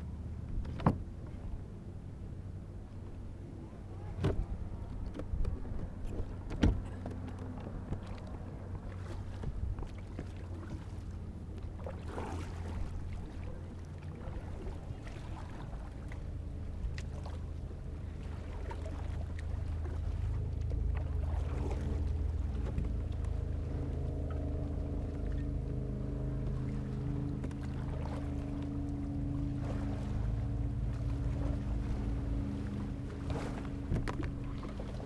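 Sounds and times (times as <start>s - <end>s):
low rumble on water: 0.0s - 35.0s
motor humming: 22.1s - 35.0s
light knocks and clicks: 33.6s - 34.4s.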